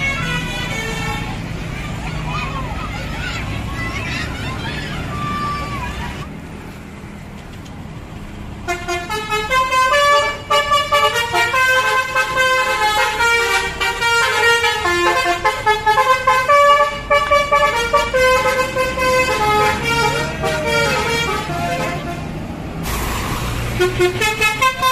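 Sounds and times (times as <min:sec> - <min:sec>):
bus horn playing melody: 0:00.0 - 0:01.5, 0:08.6 - 0:24.9
low engine rumble: 0:00.0 - 0:24.9.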